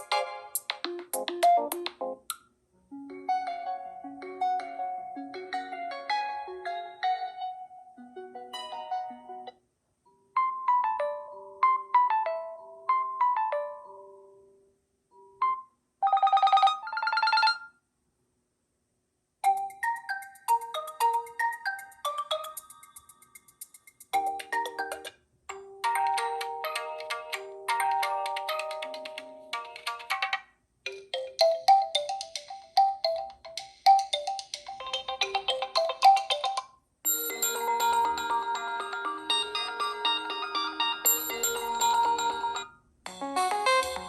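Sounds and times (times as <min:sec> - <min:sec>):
phone ringtone: 0:15.2 - 0:17.8, 0:30.9 - 0:44.0
bright melody of struck notes: 0:30.9 - 0:44.0.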